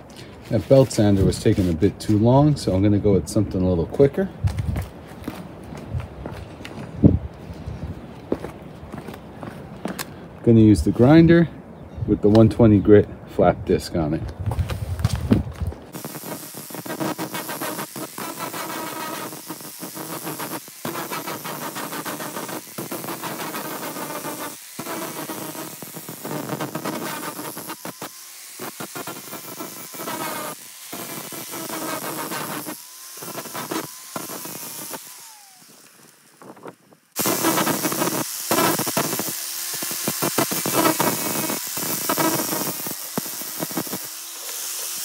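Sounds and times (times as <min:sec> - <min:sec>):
angle grinder grinding steel: 0:15.9 - 0:45.0.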